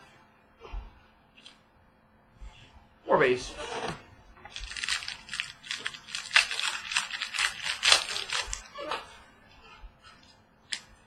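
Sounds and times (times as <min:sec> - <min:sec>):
cards flicking and rustling: 0:04.5 - 0:08.7.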